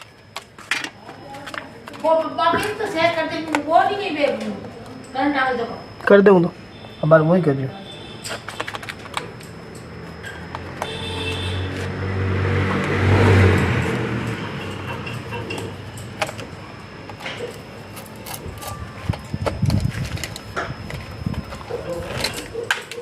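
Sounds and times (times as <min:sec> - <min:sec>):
vehicle passing by: 0:11.5 - 0:16.1.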